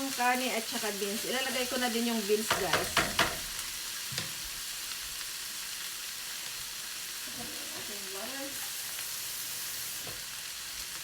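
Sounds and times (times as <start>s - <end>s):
meat sizzling in a frying pan: 0.0s - 11.0s.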